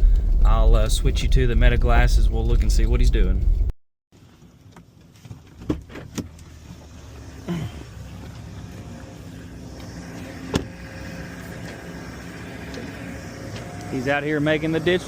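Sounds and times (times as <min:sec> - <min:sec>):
heavy equipment engine running: 0:00.0 - 0:03.7.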